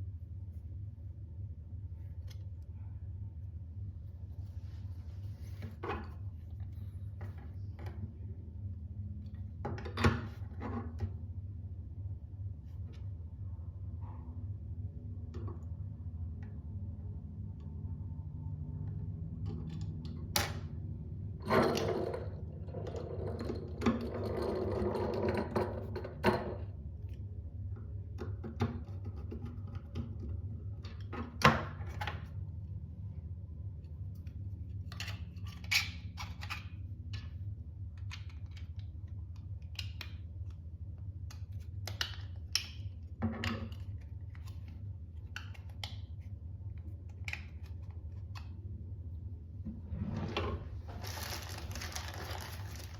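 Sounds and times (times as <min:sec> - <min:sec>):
steady low hum: 0:00.0 - 0:52.9
rustling: 0:50.7 - 0:52.9.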